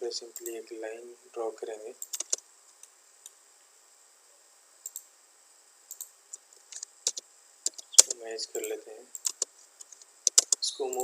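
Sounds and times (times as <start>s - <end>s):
mouse and keyboard clicks: 2.0s - 2.4s, 6.7s - 11.0s.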